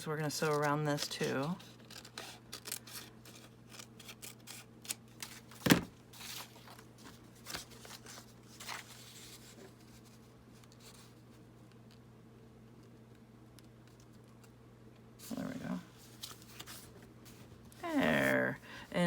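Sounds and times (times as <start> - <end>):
paper rustling: 0.3 - 11.2, 15.2 - 18.5.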